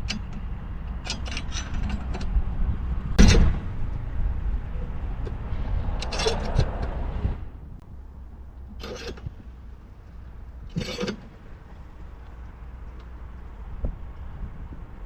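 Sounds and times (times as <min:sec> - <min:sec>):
metal tools scraping tubing: 0:01.0 - 0:02.3, 0:06.0 - 0:06.7, 0:08.8 - 0:09.3, 0:10.7 - 0:11.3.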